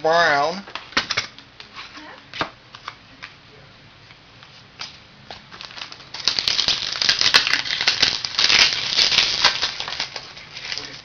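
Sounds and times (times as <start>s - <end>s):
wrapper crinkling and rustling: 5.3s - 11.0s.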